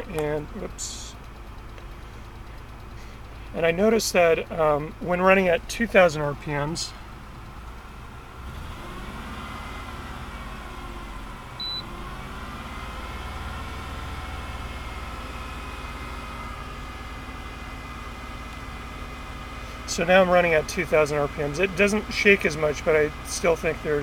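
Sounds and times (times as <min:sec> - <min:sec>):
car engine revving: 0:01.7 - 0:24.0
short high beep: 0:11.6 - 0:11.9.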